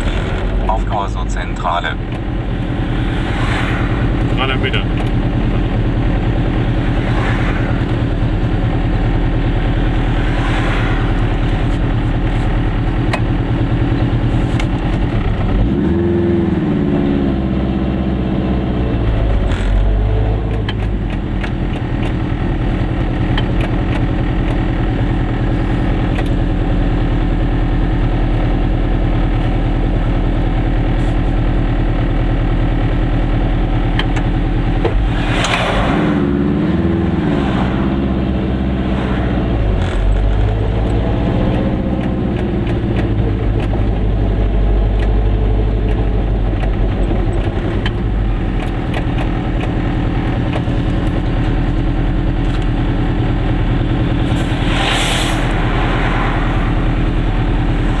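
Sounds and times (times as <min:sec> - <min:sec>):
small car engine revving: 0:01.8 - 0:21.9.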